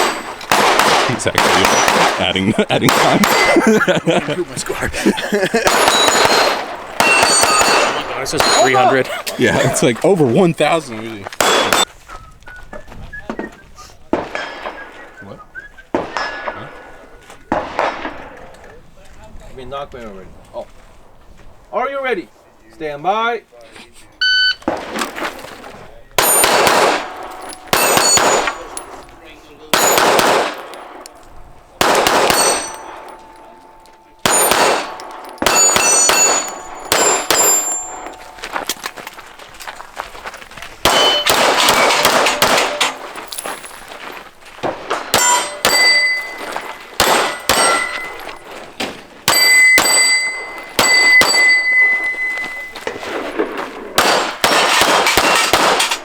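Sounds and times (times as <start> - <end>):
steel targets ringing: 0.0 - 0.5, 1.1 - 4.1, 5.6 - 9.0, 16.2 - 16.6, 26.2 - 39.1, 40.9 - 43.4, 45.0 - 48.7, 49.3 - 52.9
pistol shots: 0.0 - 4.0, 5.6 - 9.0, 11.4 - 11.9, 15.9 - 18.4, 26.2 - 38.9, 40.8 - 43.3, 44.6 - 48.4, 49.2 - 56.0.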